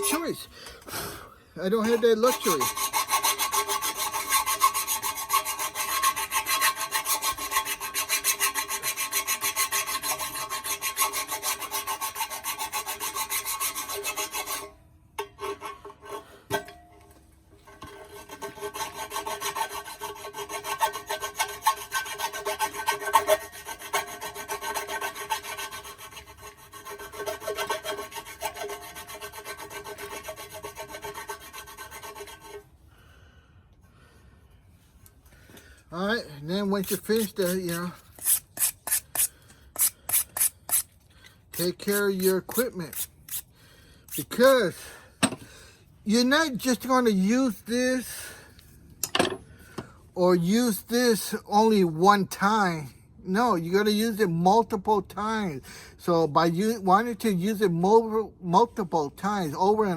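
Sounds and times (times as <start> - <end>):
tool scraping on metal: 1.6 - 16.9, 17.6 - 32.7, 35.9 - 43.5, 44.1 - 45.5.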